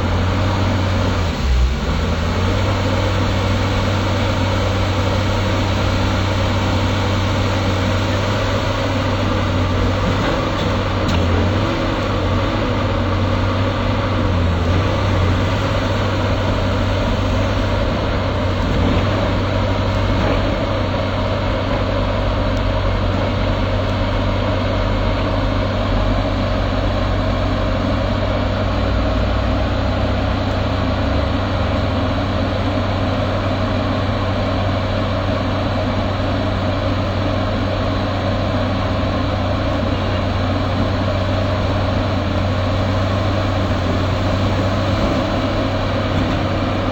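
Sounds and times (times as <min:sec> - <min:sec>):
excavator engine running: 0:00.0 - 0:46.9.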